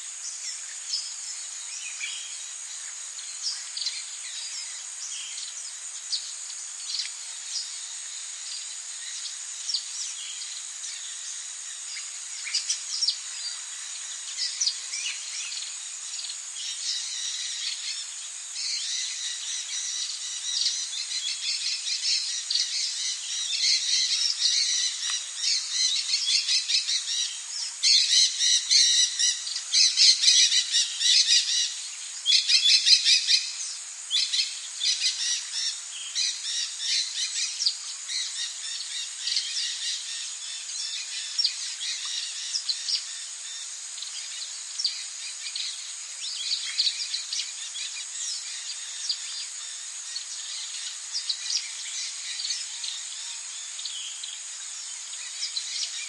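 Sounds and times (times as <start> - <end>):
insect drone: 0.0 - 56.0.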